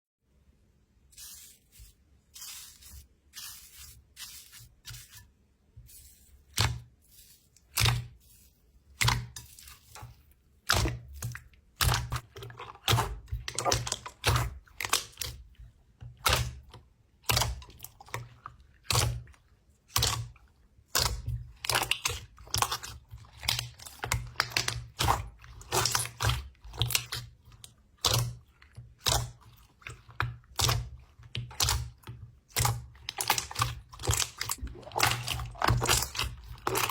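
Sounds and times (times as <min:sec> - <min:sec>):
slime crackling and squishing: 0:05.9 - 0:15.5, 0:19.9 - 0:36.9.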